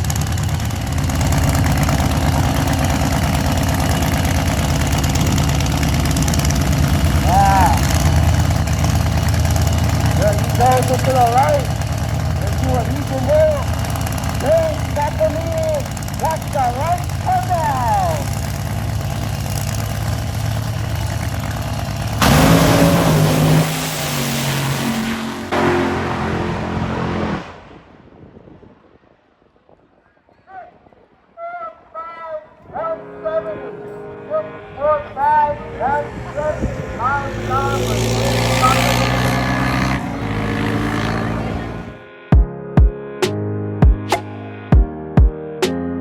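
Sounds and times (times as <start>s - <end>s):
drag racing engine idling: 0.0s - 27.3s, 35.4s - 42.0s.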